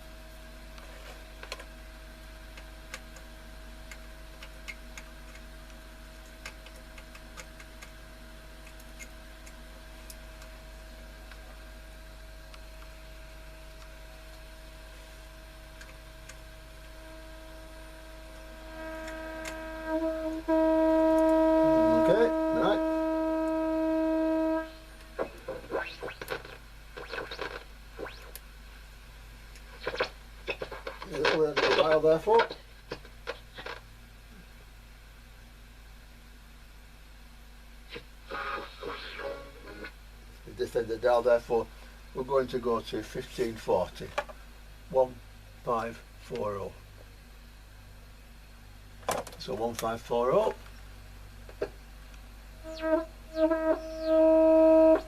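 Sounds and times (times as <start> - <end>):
steady low hum: 0.0 - 55.0
buzzy test tone from loudspeaker: 10.6 - 28.4, 29.7 - 33.8, 37.9 - 43.8, 52.5 - 55.0
faint clicks and scrapes: 29.6 - 33.8.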